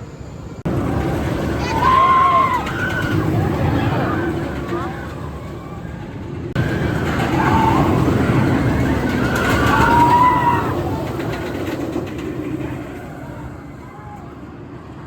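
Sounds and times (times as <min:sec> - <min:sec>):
roller coaster rumbling past: 0:00.4 - 0:15.0
riders screaming: 0:01.5 - 0:05.1, 0:06.6 - 0:11.4.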